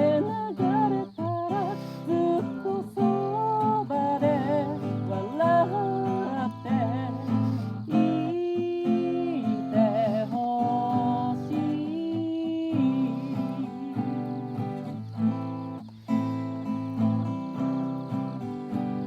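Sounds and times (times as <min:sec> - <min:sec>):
person singing: 0:00.0 - 0:14.9
acoustic guitar strummed: 0:00.0 - 0:19.0.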